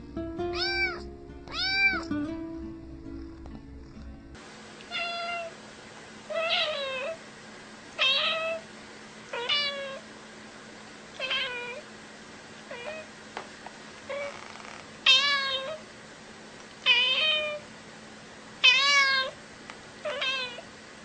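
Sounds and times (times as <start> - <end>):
cat meowing: 0.5 - 2.1, 4.9 - 5.5, 6.3 - 7.2, 8.0 - 8.6, 9.3 - 10.0, 11.2 - 11.8, 12.7 - 13.1, 14.1 - 15.8, 16.9 - 17.6, 18.6 - 19.4, 20.0 - 20.7.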